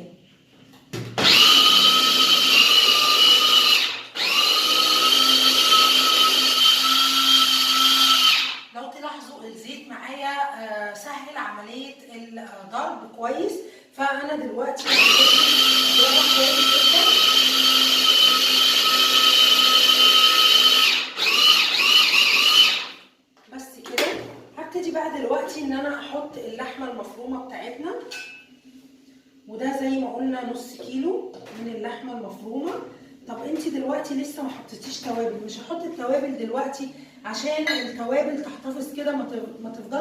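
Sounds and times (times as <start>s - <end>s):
food processor motor running: 1.2s - 8.7s, 14.8s - 23.0s.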